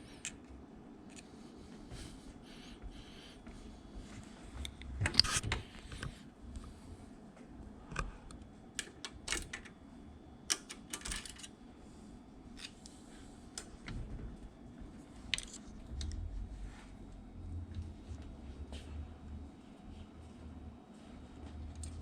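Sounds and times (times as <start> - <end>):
small metal parts clicking: 10.5 - 11.5.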